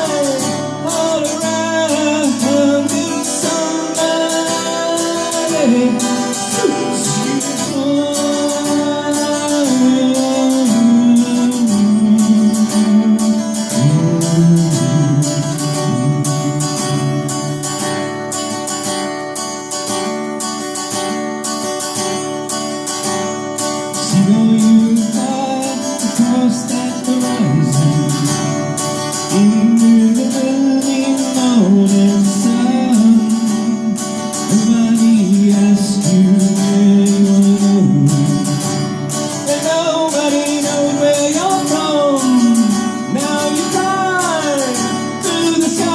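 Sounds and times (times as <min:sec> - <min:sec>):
person singing long notes: 0:00.0 - 0:17.9
strummed acoustic guitar: 0:00.0 - 0:45.9.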